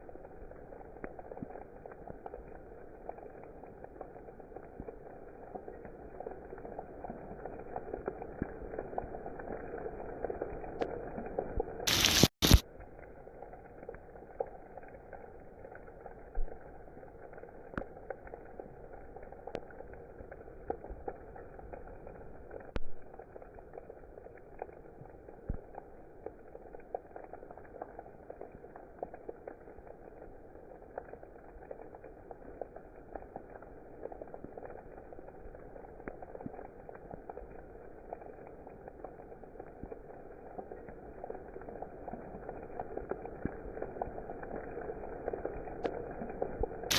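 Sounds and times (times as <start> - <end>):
steady rain: 0.0 - 46.9
ticks of raindrops: 0.0 - 46.9
loud crackling burst: 7.6 - 14.1.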